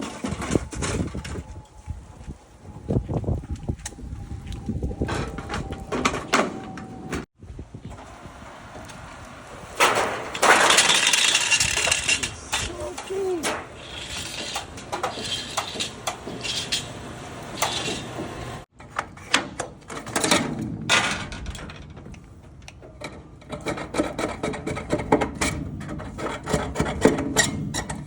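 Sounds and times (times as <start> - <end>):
metal gutter knocks and clanks: 13.4 - 28.0.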